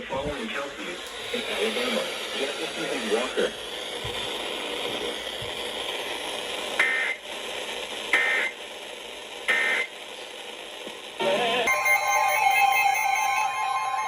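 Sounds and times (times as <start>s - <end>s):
radio hiss: 0.0s - 11.7s
digital data tone bursts: 9.5s - 9.9s.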